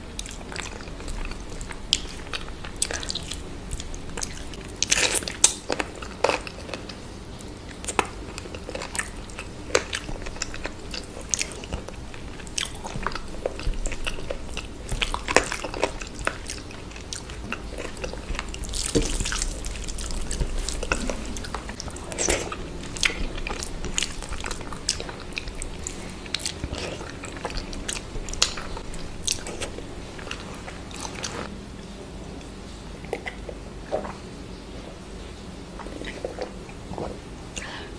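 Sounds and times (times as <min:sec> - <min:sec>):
person chewing food: 0:00.0 - 0:31.6, 0:32.3 - 0:37.9.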